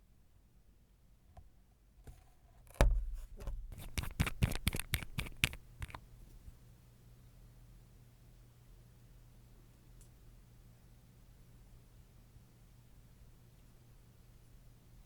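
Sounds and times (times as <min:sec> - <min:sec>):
sharp clicks and scrapes: 0:02.0 - 0:06.0.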